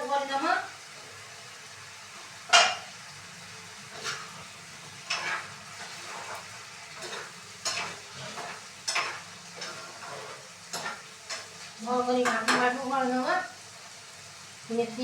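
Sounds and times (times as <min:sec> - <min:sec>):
vegetables sizzling in hot oil: 0:00.0 - 0:15.0
spoon scraping a pan: 0:02.5 - 0:03.0, 0:03.8 - 0:12.8.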